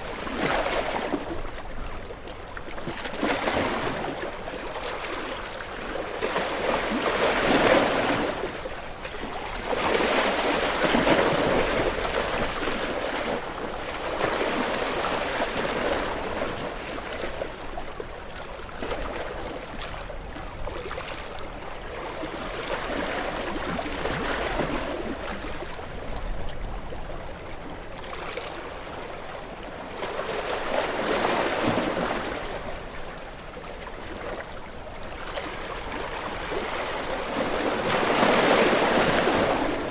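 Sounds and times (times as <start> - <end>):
waves breaking on rocky shore: 30.2 - 39.9.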